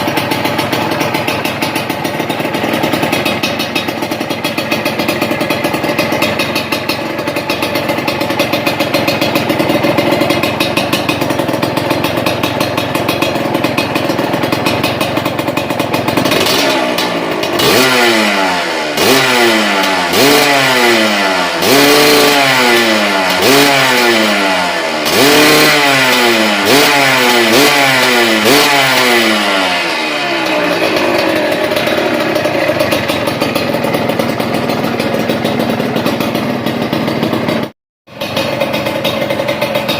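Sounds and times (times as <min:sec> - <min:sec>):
motorcycle engine idling and revving: 0:00.0 - 0:39.9.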